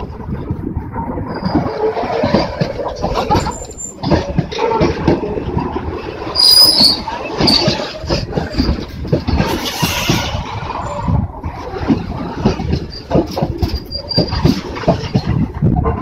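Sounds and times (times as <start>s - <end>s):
train wheels clacking over rail joints: 0.0s - 16.0s
high-pitched wheel squeal: 6.4s - 7.7s, 13.7s - 14.5s.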